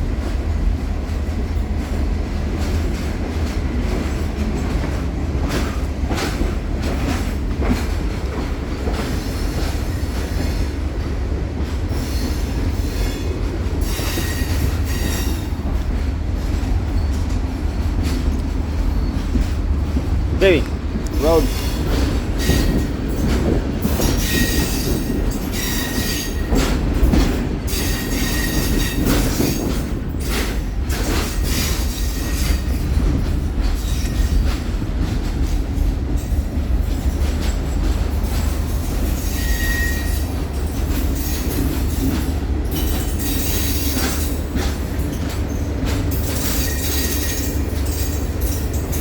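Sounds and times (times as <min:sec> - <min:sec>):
rail joint clacks: 0:00.0 - 0:49.0
train rumbling on rails: 0:00.0 - 0:49.0
high wheel squeals: 0:13.8 - 0:15.5, 0:39.2 - 0:40.3.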